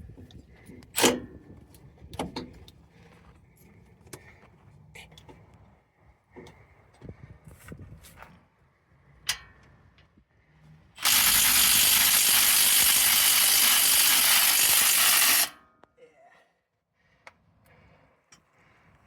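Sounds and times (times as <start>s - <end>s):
impact wrench hammering: 11.0s - 15.6s.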